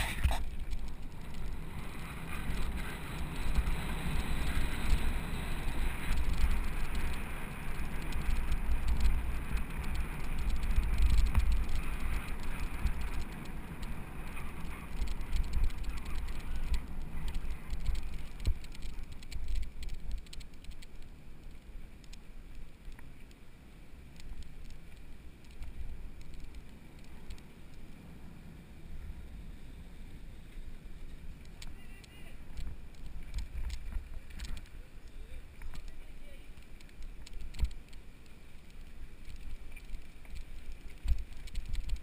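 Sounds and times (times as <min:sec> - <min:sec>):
wind and tyres rumbling: 0:00.0 - 0:42.0
bike rattling clicks: 0:00.4 - 0:23.4, 0:31.4 - 0:34.8, 0:35.5 - 0:42.0.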